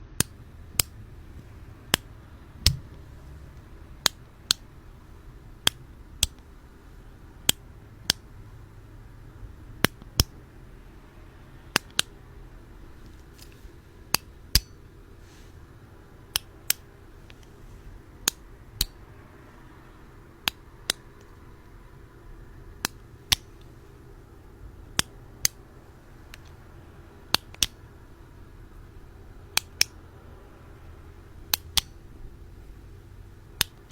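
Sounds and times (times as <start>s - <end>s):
sharp clicks: 0.2s - 4.7s, 9.8s - 10.4s, 11.7s - 12.2s, 27.3s - 27.8s.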